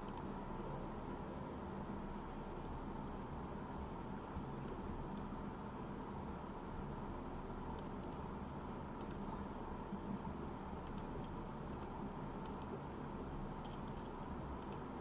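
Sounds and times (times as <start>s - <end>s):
computer mouse clicks: 0.0s - 0.3s, 7.8s - 8.3s, 9.0s - 9.3s, 10.8s - 11.1s, 11.7s - 12.8s, 13.6s - 14.9s
faint room hum: 0.0s - 15.0s.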